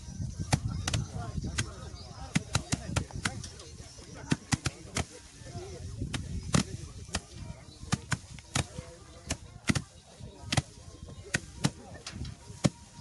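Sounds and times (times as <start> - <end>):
sticks knocking on crop: 0.5 - 1.7, 2.3 - 3.4, 4.3 - 5.1, 6.0 - 9.9, 10.5 - 11.8, 12.5 - 13.0.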